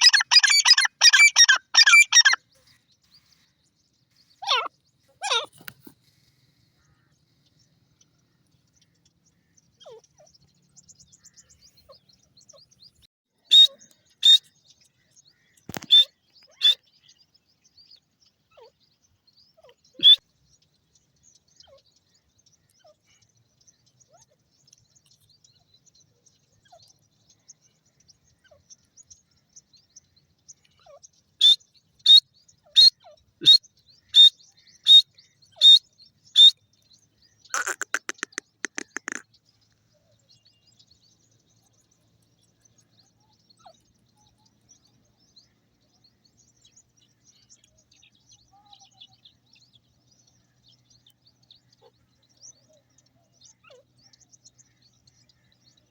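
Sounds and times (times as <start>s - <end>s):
francolin calling: 0.0s - 2.4s, 4.4s - 5.6s, 13.5s - 14.5s, 15.8s - 16.8s, 31.4s - 36.6s, 37.5s - 39.2s.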